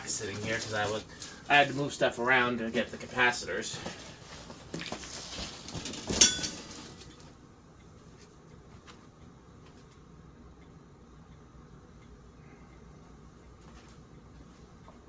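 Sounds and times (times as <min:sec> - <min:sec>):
hands rummaging among parts: 0:00.0 - 0:02.1, 0:02.8 - 0:07.3.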